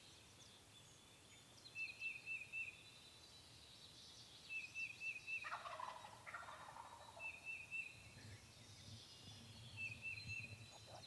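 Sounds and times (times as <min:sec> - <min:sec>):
turkey gobbling: 0:05.4 - 0:07.1.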